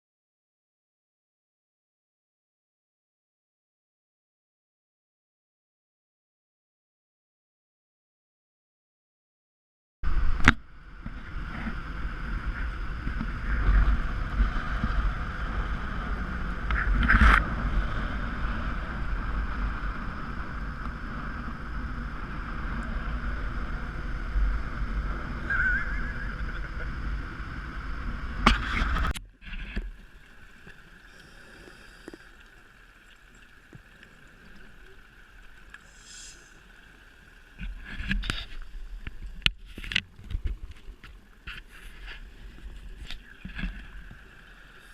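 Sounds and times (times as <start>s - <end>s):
water noise: 10.0s - 44.9s
boat engine running: 10.1s - 31.0s
distant engine hum: 10.1s - 38.1s.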